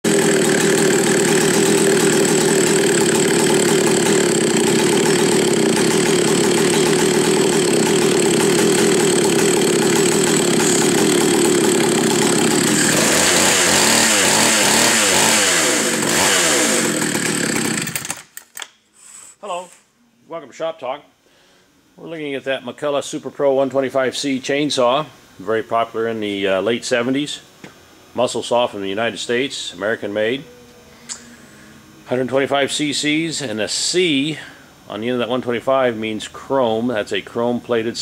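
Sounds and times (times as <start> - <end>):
chainsaw engine revving: 0.0 - 18.4.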